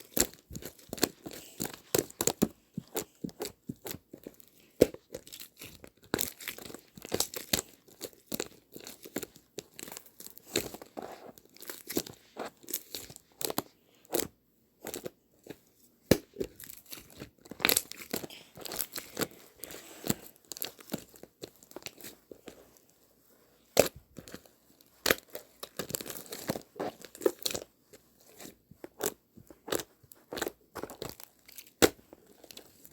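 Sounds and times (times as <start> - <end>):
irregular crackling and rustling: 0.0 - 14.2.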